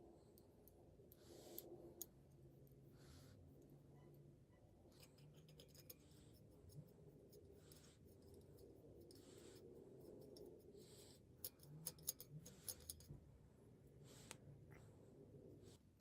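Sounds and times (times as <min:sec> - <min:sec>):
soft handling scrapes: 0:01.1 - 0:16.0.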